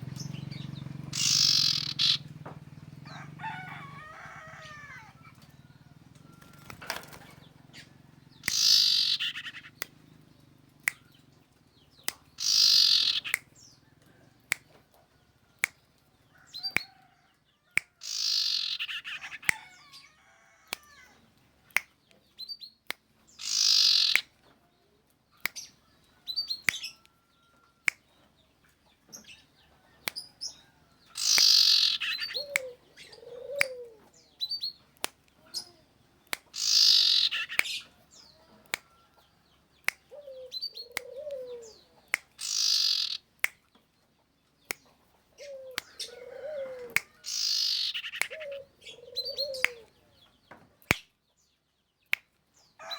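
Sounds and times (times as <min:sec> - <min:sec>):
bird chirps and clicks: 0:00.0 - 0:02.7, 0:03.5 - 0:52.8
bird harsh calls: 0:00.1 - 0:02.3, 0:06.4 - 0:09.8, 0:12.4 - 0:13.8, 0:18.0 - 0:20.2, 0:23.4 - 0:24.3, 0:30.5 - 0:34.8, 0:36.5 - 0:38.7, 0:40.0 - 0:43.3, 0:45.4 - 0:50.0.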